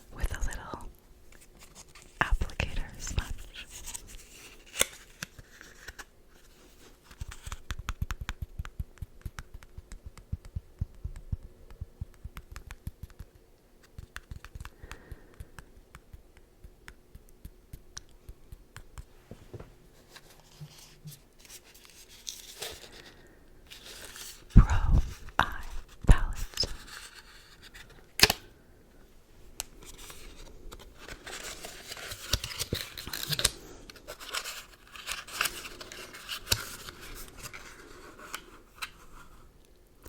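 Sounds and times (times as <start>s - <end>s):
packaging tearing and crinkling: 31.0s - 39.0s.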